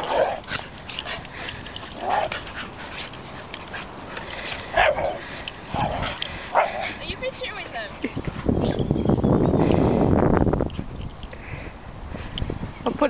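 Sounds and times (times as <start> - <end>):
dog vocal noises: 0.0 - 8.8
dogs scuffling: 0.0 - 9.0.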